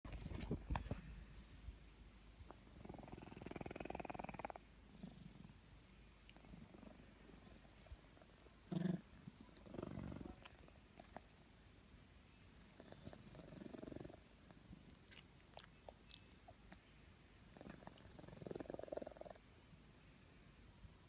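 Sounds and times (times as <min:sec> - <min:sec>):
cat snoring: 0:02.7 - 0:05.6, 0:06.4 - 0:07.8, 0:08.7 - 0:09.0, 0:09.6 - 0:10.4, 0:12.7 - 0:14.2, 0:17.5 - 0:19.4.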